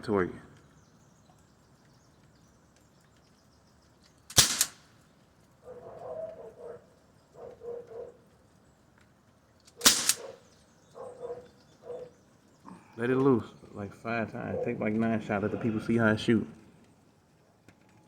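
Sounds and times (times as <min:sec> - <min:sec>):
air rifle shots: 0:04.3 - 0:04.9, 0:09.7 - 0:10.4.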